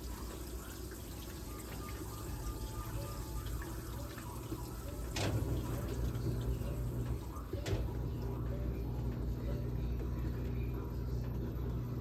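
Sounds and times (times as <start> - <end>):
washing machine hum: 0.0 - 12.0
water draining: 0.0 - 12.0
washing machine click: 5.0 - 8.5.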